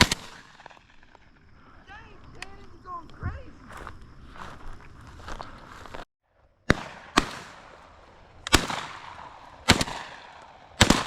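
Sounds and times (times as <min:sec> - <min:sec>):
shotgun blasts: 0:00.0 - 0:01.2, 0:06.6 - 0:11.0.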